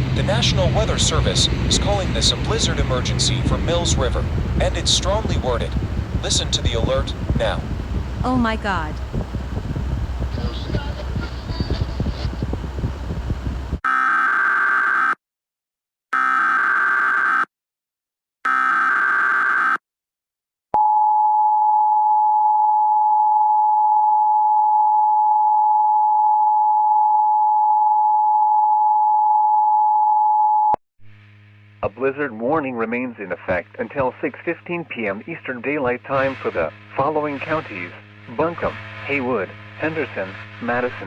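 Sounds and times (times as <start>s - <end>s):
wind noise: 0.0s - 13.8s.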